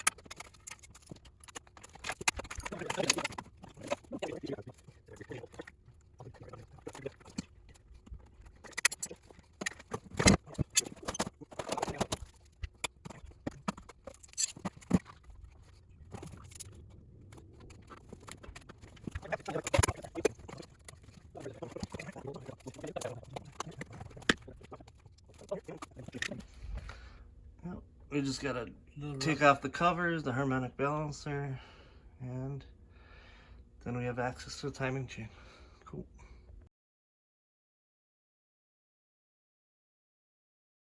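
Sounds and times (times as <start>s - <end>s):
hand tools clinking on metal: 0.0s - 4.3s.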